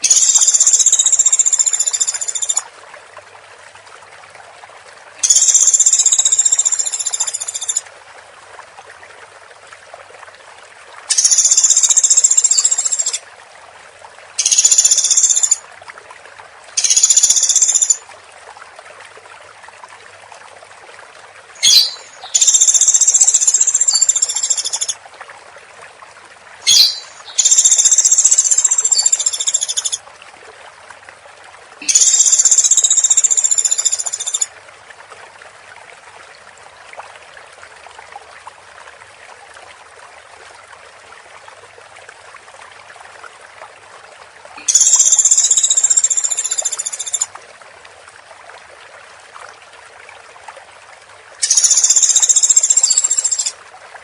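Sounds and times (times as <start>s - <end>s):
woodpecker rattling call: 21.6s - 24.9s, 26.7s - 30.0s, 44.7s - 47.2s.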